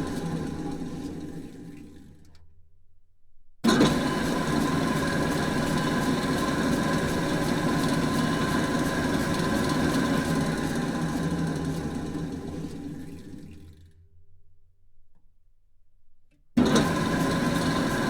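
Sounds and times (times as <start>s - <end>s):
drill press running: 3.6s - 13.9s, 16.6s - 18.0s.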